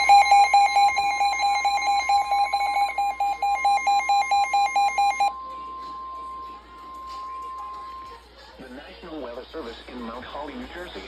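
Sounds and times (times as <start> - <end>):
steady warning alarm tone: 0.0 - 5.3
rapidly pulsing beep: 0.0 - 8.0.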